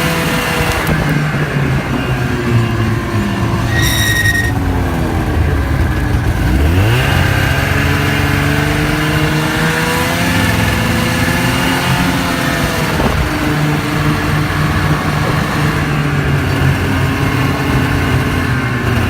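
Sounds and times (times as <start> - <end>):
snowmobile engine revving: 0.0 - 19.0
high beep: 3.7 - 4.6.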